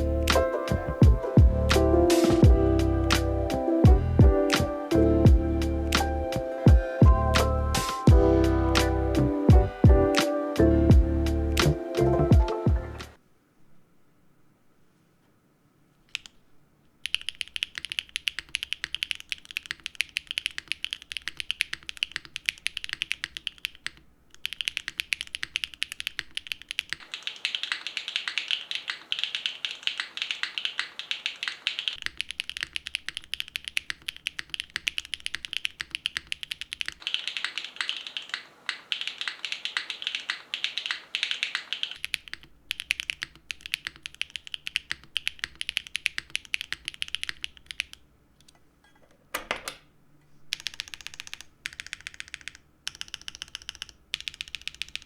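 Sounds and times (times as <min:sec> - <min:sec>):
mechanical keyboard typing: 0:17.0 - 0:48.6, 0:50.5 - 0:55.0.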